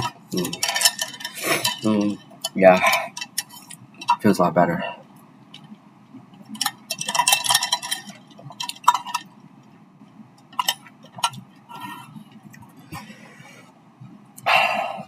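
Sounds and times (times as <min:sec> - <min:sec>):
tableware clinking: 0:00.0 - 0:04.2, 0:06.5 - 0:09.3.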